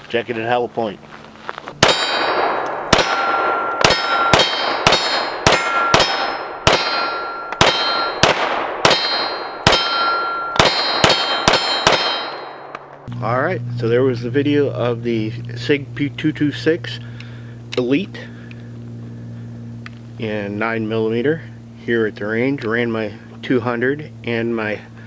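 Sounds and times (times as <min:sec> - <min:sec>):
metallic ringing: 0:01.8 - 0:12.7
pistol shots: 0:01.8 - 0:12.9.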